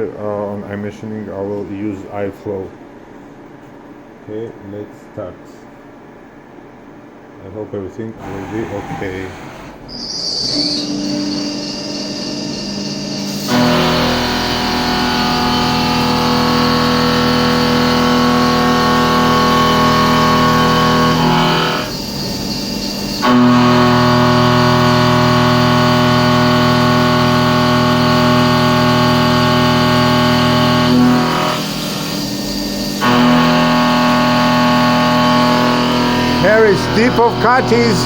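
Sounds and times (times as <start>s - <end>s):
milling machine cutting steel: 8.2s - 38.0s.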